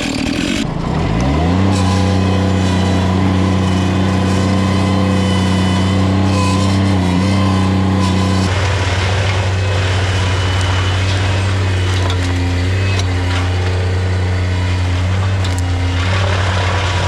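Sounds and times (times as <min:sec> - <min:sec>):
engine at high revs: 0:00.0 - 0:17.0.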